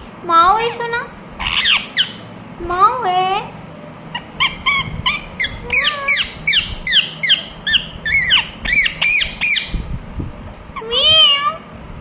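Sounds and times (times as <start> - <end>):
parrot squawking: 1.4 - 2.2, 4.1 - 9.8.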